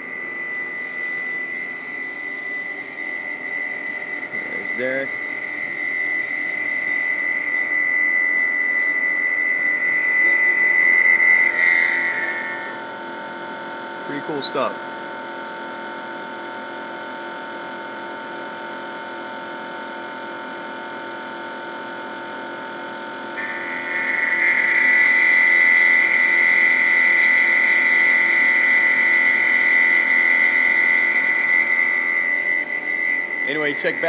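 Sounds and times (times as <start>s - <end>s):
machine hum: 0.0s - 14.8s, 23.3s - 34.0s
milling machine high whine: 0.0s - 14.9s, 23.3s - 34.0s.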